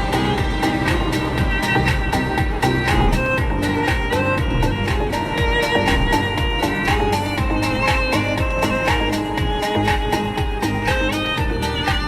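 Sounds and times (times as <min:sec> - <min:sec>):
instrumental pop music with steady beat: 0:00.0 - 0:12.0.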